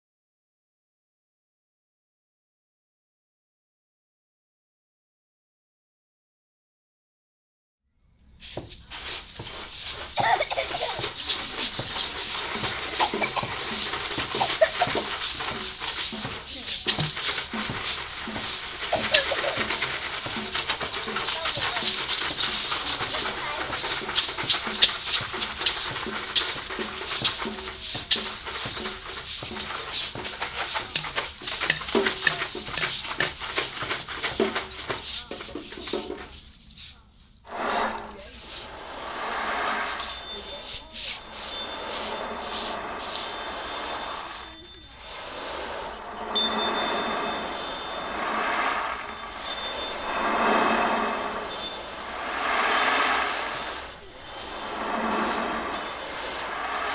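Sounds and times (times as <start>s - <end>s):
dense rattling hiss like shakers: 8.3s - 56.9s
pitched animal-like calls: 10.2s - 11.7s, 12.7s - 15.2s.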